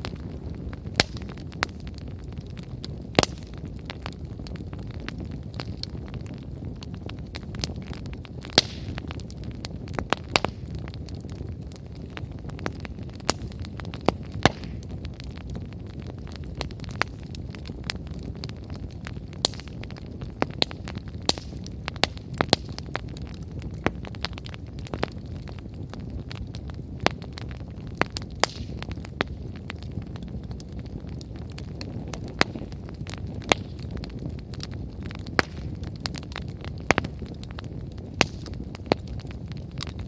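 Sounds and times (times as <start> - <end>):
firewood crackling and popping: 0.0 - 40.0
roar of flames: 0.0 - 40.0.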